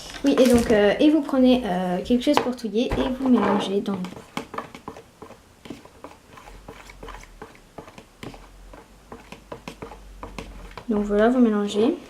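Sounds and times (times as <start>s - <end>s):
fork tapping a container: 9.1s - 11.0s.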